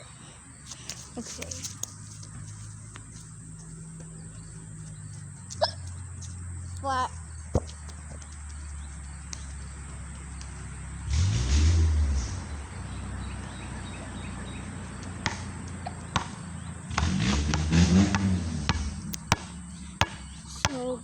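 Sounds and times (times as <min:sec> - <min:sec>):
steady low hum: 0:00.0 - 0:21.0
loud rumble: 0:09.0 - 0:20.6
sharp knocks: 0:15.2 - 0:20.8
faint bird chirps: 0:19.0 - 0:21.0.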